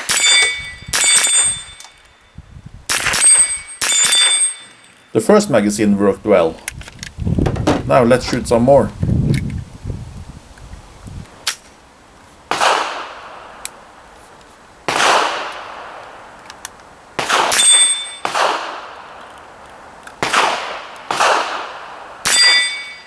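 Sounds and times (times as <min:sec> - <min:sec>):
rifle shots echoing: 0:00.0 - 0:01.8, 0:02.9 - 0:04.6, 0:12.5 - 0:13.6, 0:14.9 - 0:16.3, 0:17.2 - 0:19.2, 0:20.2 - 0:23.0
steel target ringing: 0:00.0 - 0:02.4, 0:03.2 - 0:05.1, 0:17.5 - 0:18.4, 0:22.3 - 0:23.0.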